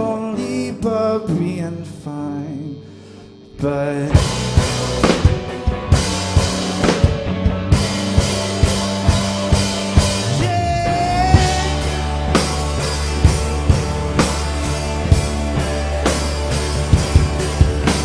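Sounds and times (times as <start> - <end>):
sustained bass notes: 0.0 - 18.0
drum kit beat: 4.0 - 18.0
held lead guitar note: 4.2 - 18.0.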